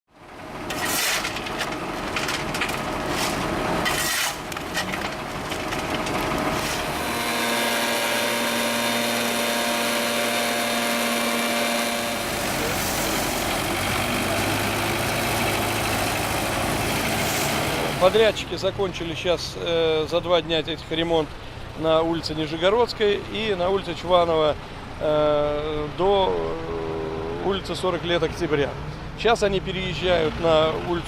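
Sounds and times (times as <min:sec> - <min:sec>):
engine running: 0:00.1 - 0:20.2, 0:21.2 - 0:31.0
machinery scraping: 0:00.6 - 0:18.5.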